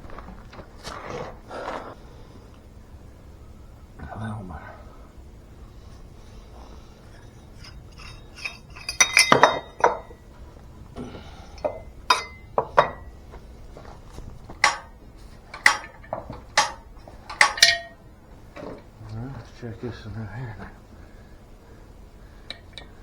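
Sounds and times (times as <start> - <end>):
metal tools clinking and clanking: 7.1 - 10.2, 11.6 - 13.2, 14.6 - 18.0.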